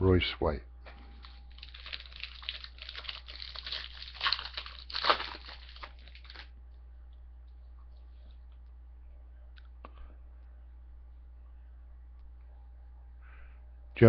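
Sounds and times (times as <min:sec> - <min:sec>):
plastic wrapper tearing and crinkling: 0:01.1 - 0:06.5.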